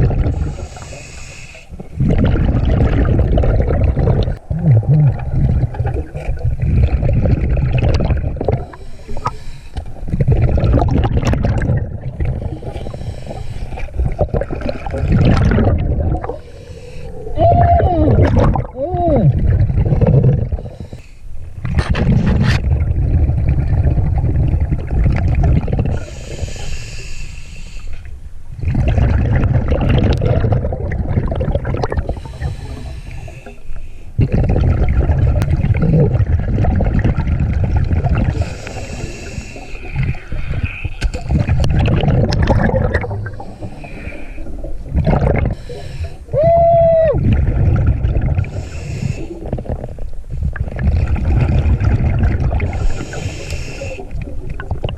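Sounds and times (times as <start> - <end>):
exhaled bubbles rushing underwater: 0.0 - 26.4, 28.5 - 54.9
regulator hiss on inhale: 0.4 - 1.8, 8.7 - 10.0, 12.5 - 13.9, 16.4 - 17.4, 20.6 - 21.5, 25.9 - 28.2, 32.1 - 34.2, 38.3 - 40.9, 43.2 - 44.6, 45.5 - 46.3, 48.4 - 49.6, 52.7 - 54.2.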